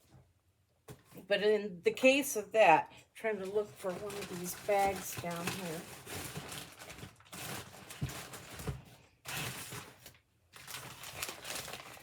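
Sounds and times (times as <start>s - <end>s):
bags rustling and crinkling: 3.3s - 12.0s.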